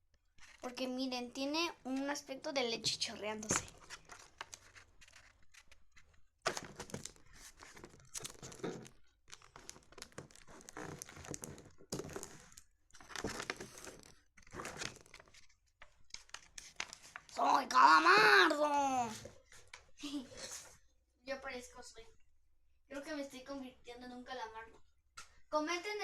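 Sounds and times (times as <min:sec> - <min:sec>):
paper and tape crinkling: 0:00.4 - 0:01.0, 0:03.0 - 0:20.7.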